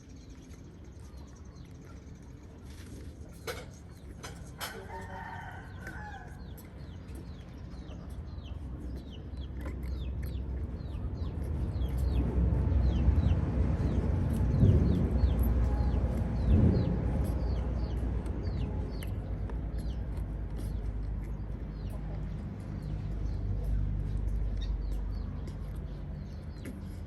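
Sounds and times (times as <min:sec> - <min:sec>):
birds chirping: 0:00.0 - 0:27.0
low rumbling noise: 0:06.4 - 0:27.0.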